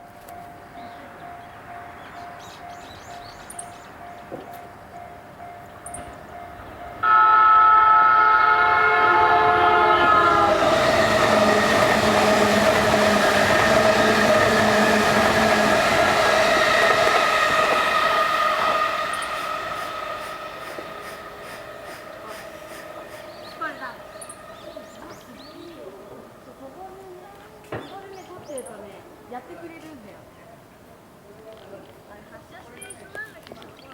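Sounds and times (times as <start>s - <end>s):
train horn: 6.6s - 27.3s
train wheels and motors running: 9.9s - 28.4s.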